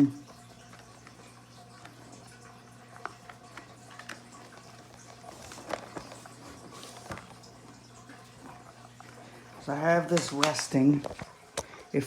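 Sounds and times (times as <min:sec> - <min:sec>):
plastic parts clicking and knocking: 0:10.0 - 0:11.7.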